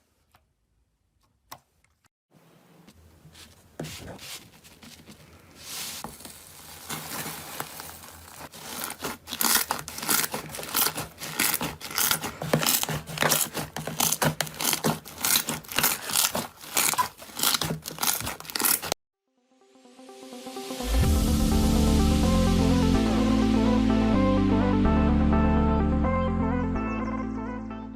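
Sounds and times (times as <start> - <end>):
slime crackling and popping: 7.0 - 18.9.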